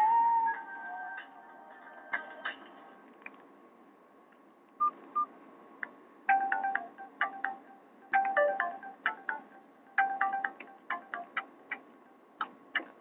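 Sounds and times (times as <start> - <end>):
chiming ringtone melody: 6.3 - 11.4.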